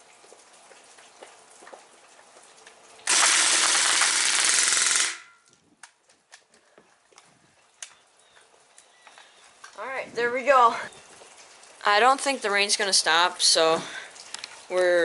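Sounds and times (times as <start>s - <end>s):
light rain ticking: 0.0s - 15.0s
bb gun full-auto burst: 3.1s - 5.4s.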